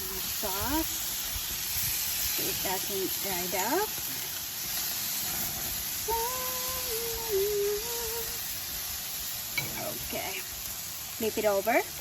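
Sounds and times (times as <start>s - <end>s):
chicken sizzling on a grill: 0.0s - 12.0s
woman humming: 6.0s - 8.5s.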